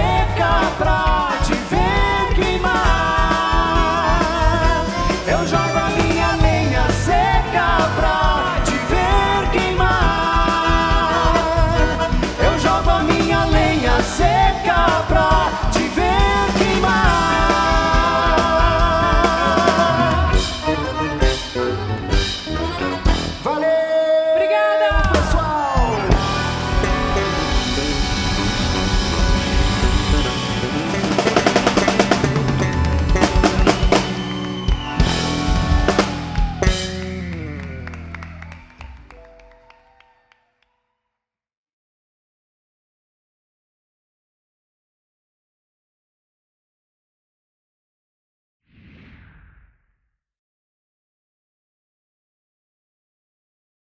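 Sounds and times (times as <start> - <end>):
pulsing bass: 0.0 - 23.4, 25.0 - 38.8
drum kit accents: 0.0 - 23.7, 24.9 - 39.7
live band playing: 0.0 - 39.7.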